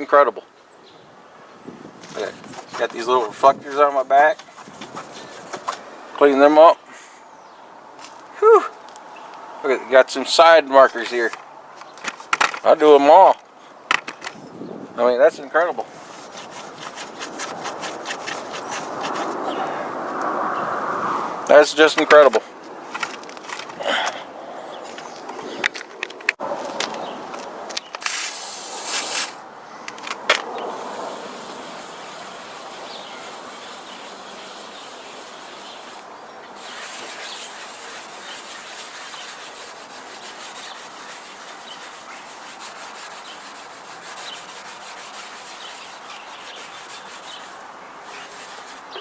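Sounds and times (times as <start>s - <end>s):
cloth rubbing on plastic: 2.1s - 5.9s, 15.9s - 19.6s, 36.6s - 49.0s
aerosol spray hiss: 28.0s - 29.4s, 30.7s - 38.7s.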